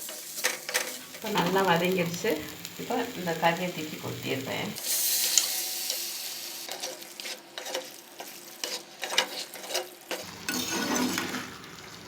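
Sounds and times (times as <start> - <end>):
chicken sizzling in a pan: 0.0 - 12.0
spoon scraping and knocking pan: 6.7 - 12.0.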